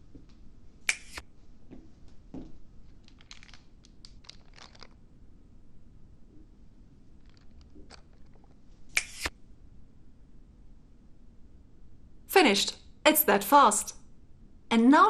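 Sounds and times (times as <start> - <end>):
packaging crinkling: 2.8 - 5.0.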